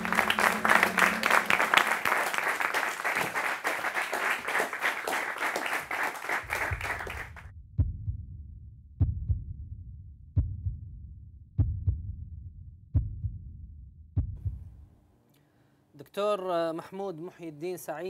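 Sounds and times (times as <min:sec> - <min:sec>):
audience applause: 0:00.0 - 0:07.5.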